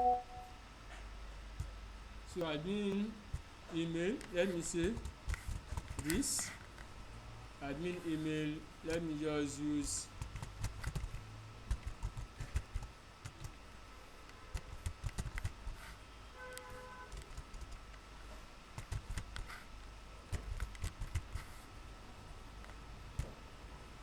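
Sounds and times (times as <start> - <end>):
keyboard typing: 0.0 - 0.4.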